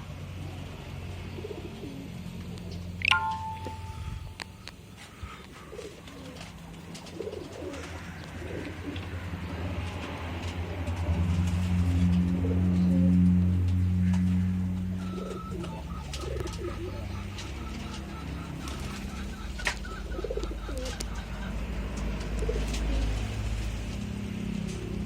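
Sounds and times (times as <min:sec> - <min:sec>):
doves cooing: 0:00.4 - 0:03.2, 0:03.8 - 0:25.0
low hum: 0:02.7 - 0:05.0
high chirps: 0:03.0 - 0:04.7.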